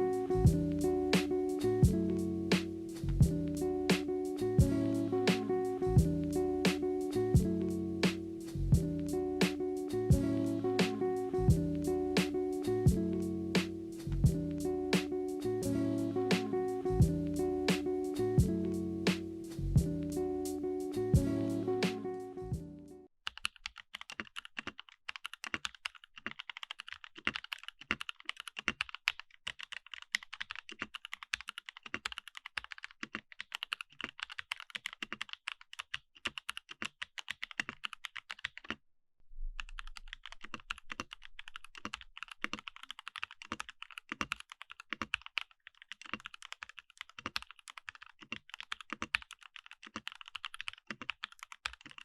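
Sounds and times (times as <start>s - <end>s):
mechanical keyboard typing: 23.3s - 38.8s, 39.6s - 52.0s.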